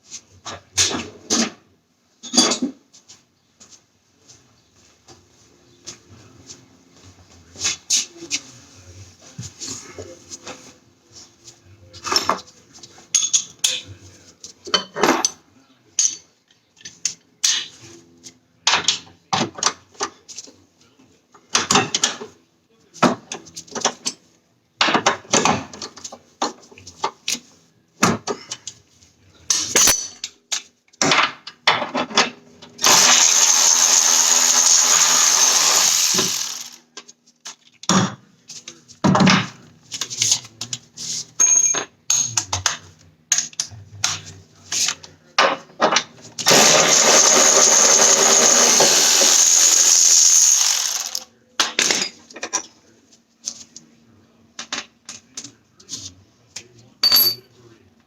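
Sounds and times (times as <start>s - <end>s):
metal tools clanking: 29.7s - 30.3s, 41.4s - 42.5s, 57.0s - 57.6s
power tool running: 32.8s - 36.8s, 46.4s - 51.3s.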